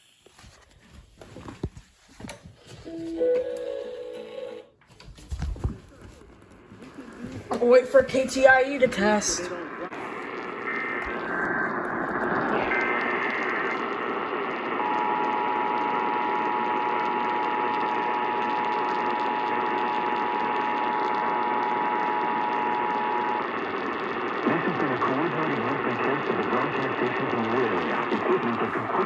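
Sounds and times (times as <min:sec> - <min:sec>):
two-tone alarm signal: 0:02.8 - 0:04.7
radio static: 0:05.4 - 0:29.0
announcer speaking: 0:07.4 - 0:10.2.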